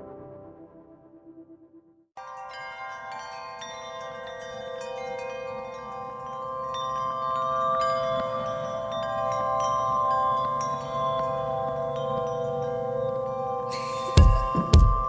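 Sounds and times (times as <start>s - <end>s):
soft ambient music: 0.0s - 15.0s
chime and bell strikes: 13.7s - 15.0s.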